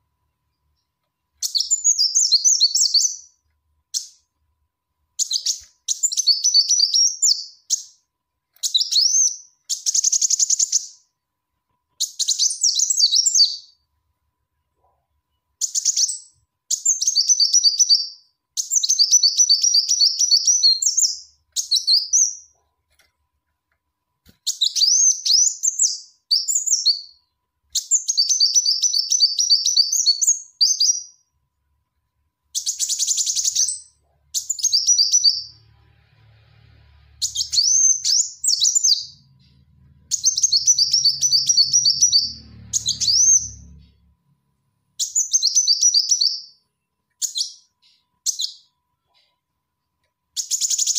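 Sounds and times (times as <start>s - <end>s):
sunbird chirps and trills: 37.1s - 44.0s.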